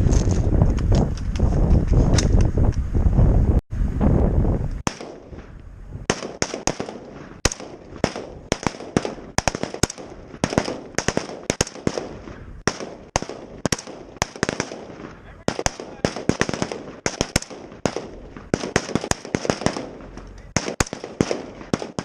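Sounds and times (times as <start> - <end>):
rifle shots: 4.8 - 5.5, 6.1 - 22.0.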